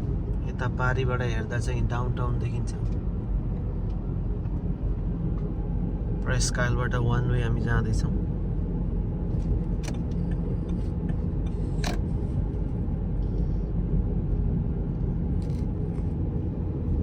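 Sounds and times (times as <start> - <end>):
car road and engine rumble: 0.0 - 17.0.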